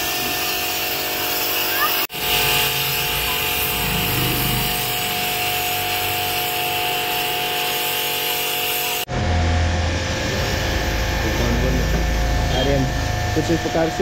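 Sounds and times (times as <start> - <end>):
pressure washer water jet hissing: 0.0 - 9.1, 9.9 - 14.0
steady machine tone: 0.0 - 14.0.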